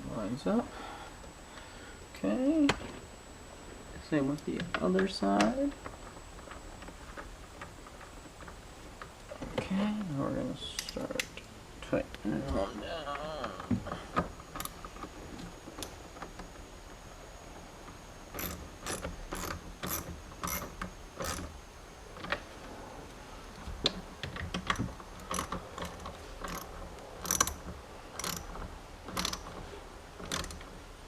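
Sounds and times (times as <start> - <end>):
hand ratchet clicking: 14.5 - 14.8, 18.3 - 21.6, 23.6 - 29.6, 30.2 - 30.7.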